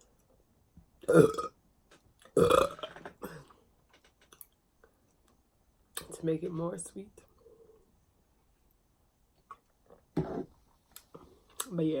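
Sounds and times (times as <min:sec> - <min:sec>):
woman burping: 0:01.1 - 0:01.5, 0:02.4 - 0:03.5.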